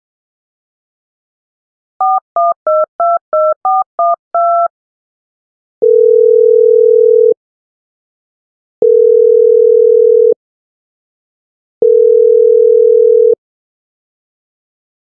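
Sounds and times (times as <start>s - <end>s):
telephone ringing tone: 2.0s - 4.7s, 5.8s - 7.4s, 8.8s - 10.4s, 11.8s - 13.4s
touch-tone keypad beeps: 2.0s - 4.7s.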